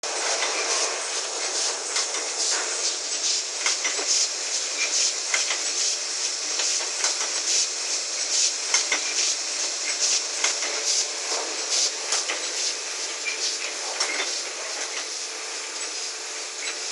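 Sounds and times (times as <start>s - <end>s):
die-cutting machine clatter: 0.1s - 16.9s.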